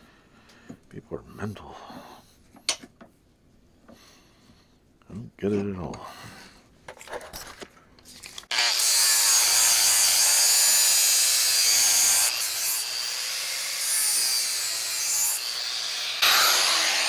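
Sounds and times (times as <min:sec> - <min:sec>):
power grinder grinding metal: 0:08.5 - 0:17.0.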